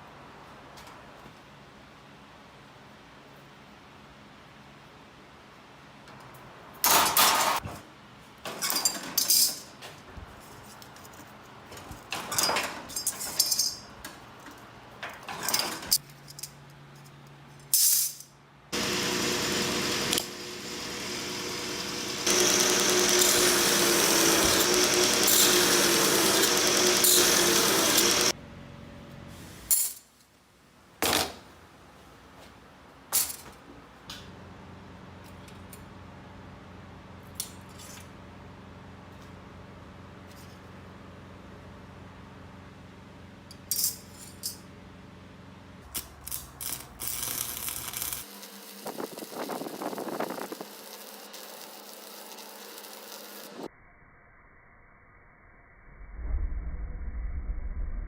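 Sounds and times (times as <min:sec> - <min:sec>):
power tool running: 0:18.8 - 0:28.4, 0:47.2 - 0:53.7.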